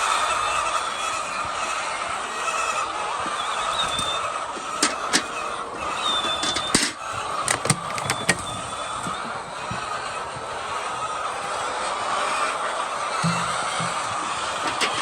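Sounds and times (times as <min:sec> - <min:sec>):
steady mechanical noise: 0:03.9 - 0:15.0
sharp clicks and knocks: 0:04.8 - 0:05.3, 0:06.3 - 0:08.4, 0:13.2 - 0:15.0.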